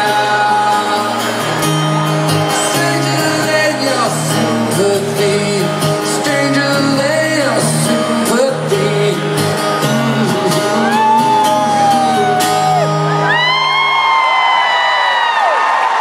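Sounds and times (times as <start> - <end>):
crowd whooping and cheering: 0.0 - 4.5, 10.5 - 16.0
live rock band playing: 0.0 - 14.2.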